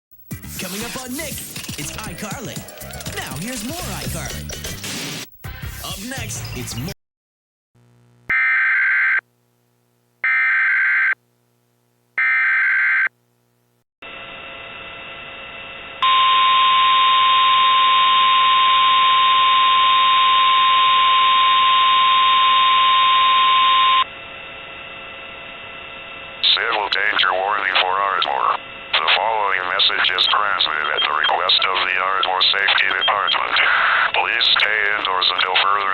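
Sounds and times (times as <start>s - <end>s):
warbling electronic data bursts: 26.4s - 35.4s.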